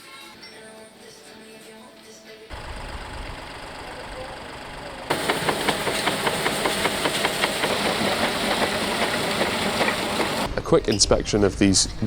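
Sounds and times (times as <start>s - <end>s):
machine hissing: 2.5s - 10.5s
rapid regular clicking: 2.5s - 10.5s.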